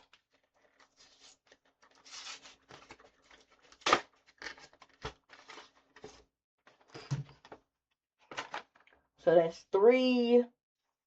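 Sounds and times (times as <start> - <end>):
cards and wrappers rustling: 0.0 - 7.1.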